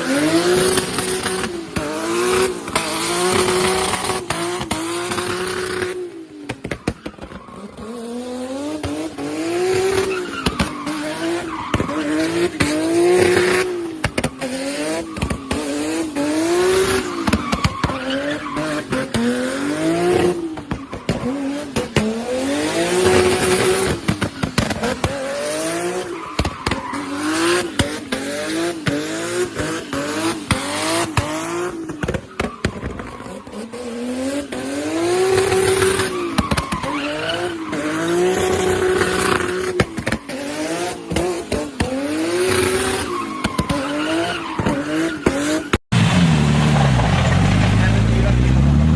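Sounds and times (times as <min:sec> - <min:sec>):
car engine revving hard: 0:00.0 - 0:06.2, 0:07.7 - 0:32.2, 0:33.2 - 0:48.9
exhaust cracks: 0:45.9 - 0:48.9.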